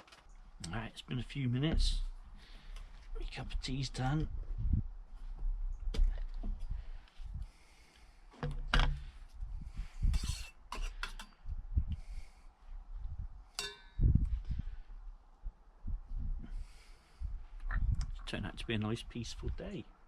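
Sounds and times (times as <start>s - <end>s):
metal cookware clicks and knocks: 13.6s - 13.9s
ringing metallic clink: 13.6s - 14.0s.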